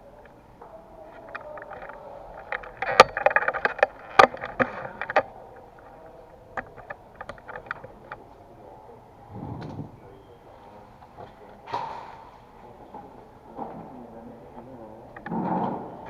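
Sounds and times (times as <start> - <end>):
sharp clicks and knocks: 1.1 - 6.0, 6.6 - 8.2.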